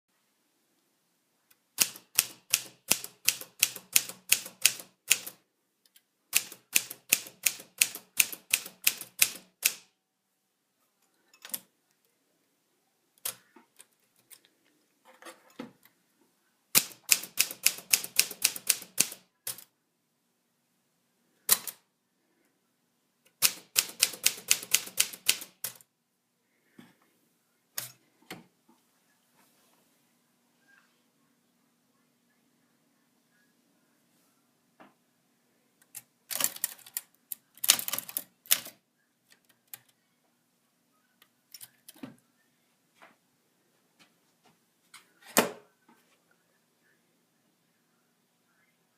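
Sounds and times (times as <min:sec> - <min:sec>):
typewriter keystrokes: 0:01.8 - 0:05.4, 0:06.4 - 0:09.9, 0:16.8 - 0:19.6, 0:23.4 - 0:25.8, 0:36.3 - 0:37.0, 0:37.6 - 0:38.7.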